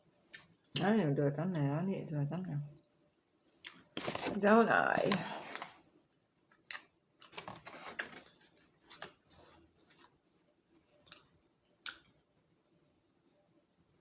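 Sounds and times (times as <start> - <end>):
chewing crunches and clicks: 3.6 - 3.9, 6.6 - 8.1, 9.9 - 10.1, 11.0 - 12.2.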